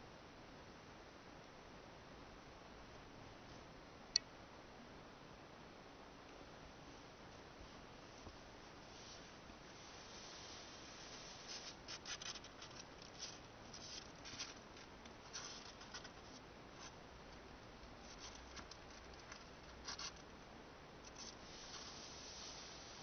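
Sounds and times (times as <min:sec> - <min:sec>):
steady background hiss: 0:00.0 - 0:23.0
faint scratching and rustling: 0:06.8 - 0:23.0.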